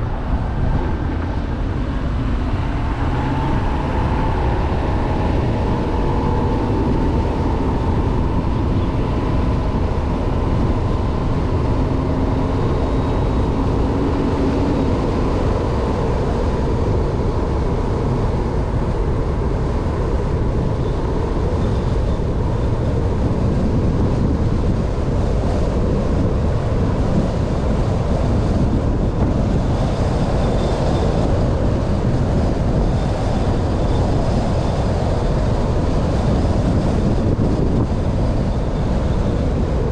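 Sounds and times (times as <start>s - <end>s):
car tyre and engine rumble: 0.0s - 39.9s
faint wavering whine: 0.0s - 39.9s.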